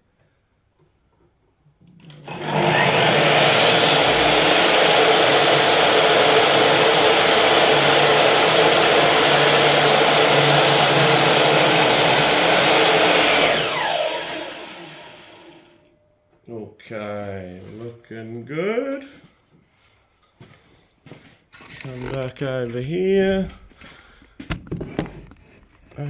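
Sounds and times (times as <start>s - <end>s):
power tool motor running: 2.2s - 15.7s.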